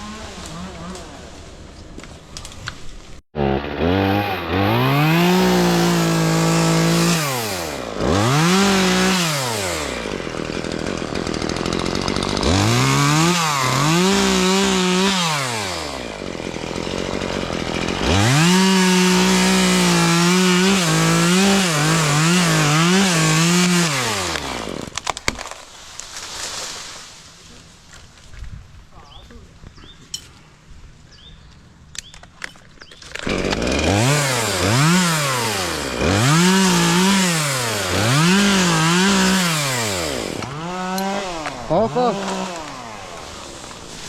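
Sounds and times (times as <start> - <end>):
chainsaw revving: 3.4 - 25.0, 33.1 - 44.0.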